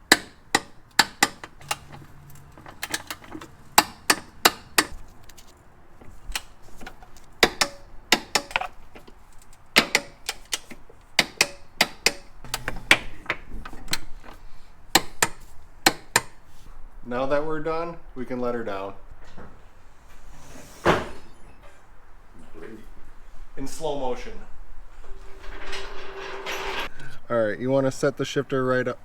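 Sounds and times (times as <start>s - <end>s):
ratchet wrench clicking: 0.0s - 5.0s.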